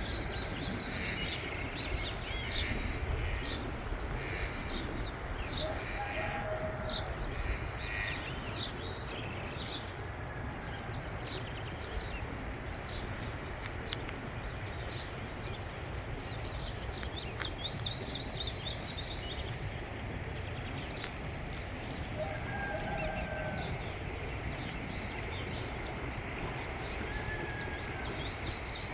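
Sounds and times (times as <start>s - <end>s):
birds chirping: 0.0s - 28.9s
lower bird call: 22.2s - 28.9s.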